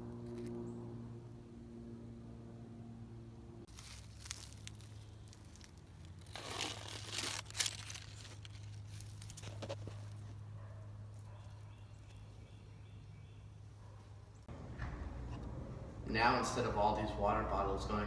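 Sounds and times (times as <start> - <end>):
steady low hum: 0.0 - 18.0
rustling and crinkling: 3.7 - 11.3.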